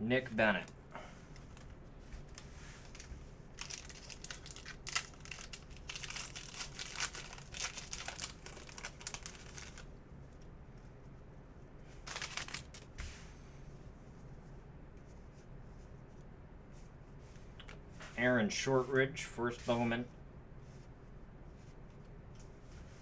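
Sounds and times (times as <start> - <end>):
foil wrappers crinkling and tearing: 2.3 - 9.9, 12.0 - 13.0.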